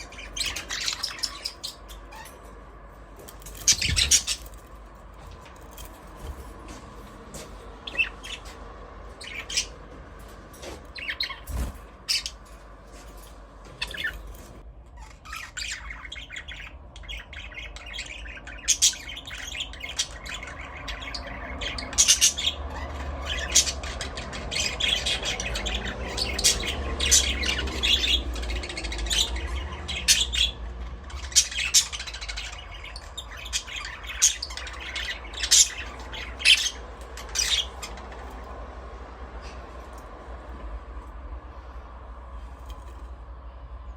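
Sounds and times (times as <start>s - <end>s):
budgerigars chirping and squawking: 0.0s - 2.6s, 3.2s - 4.7s, 7.4s - 9.9s, 10.6s - 12.6s, 13.7s - 39.8s.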